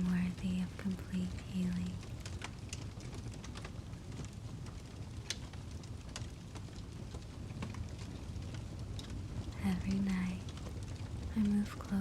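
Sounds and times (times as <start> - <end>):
low steady rumble: 0.0 - 12.0
wood fire crackling: 0.0 - 12.0.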